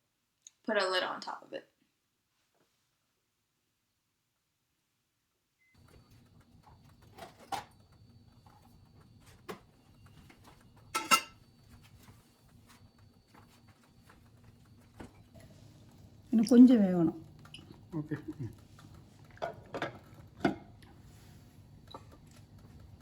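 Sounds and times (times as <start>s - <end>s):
faint steady hum: 0.1s - 23.0s
cookware knocking and clicking: 10.9s - 11.4s.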